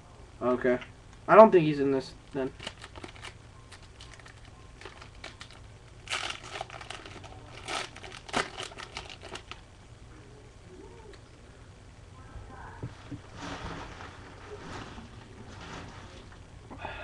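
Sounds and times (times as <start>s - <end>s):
wrapper crinkling and tearing: 2.4s - 9.6s.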